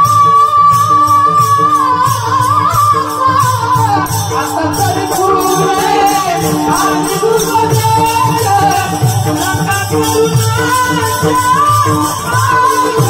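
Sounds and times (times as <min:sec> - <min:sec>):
held drone accompaniment: 0:00.0 - 0:13.0
jingling cymbal strokes: 0:00.0 - 0:13.0
high wavering voice singing: 0:03.1 - 0:13.0
drum beat: 0:03.8 - 0:13.0.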